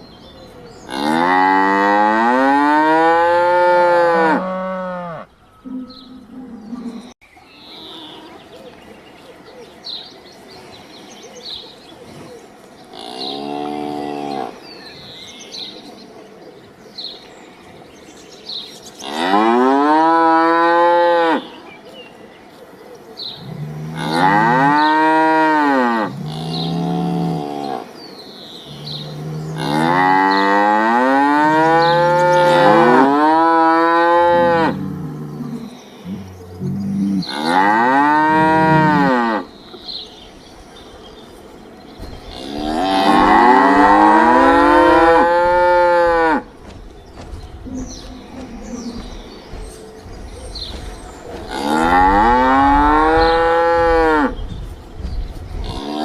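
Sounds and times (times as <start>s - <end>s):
cattle mooing: 0.9s - 7.2s, 28.7s - 39.5s, 42.3s - 46.5s, 51.4s - 54.3s.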